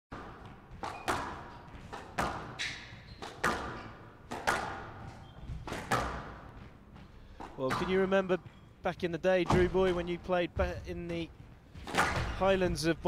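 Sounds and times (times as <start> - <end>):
squash ball cracking off rackets and walls: 0.1 - 8.1, 11.8 - 12.4.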